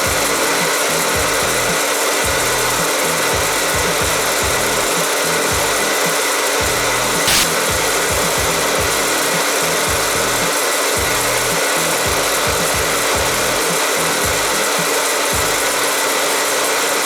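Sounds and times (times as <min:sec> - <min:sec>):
hairdryer blowing air: 0:00.0 - 0:17.0
sharp click: 0:07.3 - 0:07.8.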